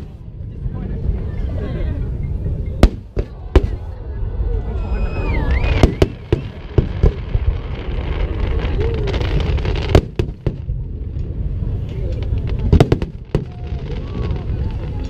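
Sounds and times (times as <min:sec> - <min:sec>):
steady low rumble: 0:00.0 - 0:15.0
fireworks bangs and cracks: 0:02.7 - 0:04.0, 0:05.3 - 0:15.0.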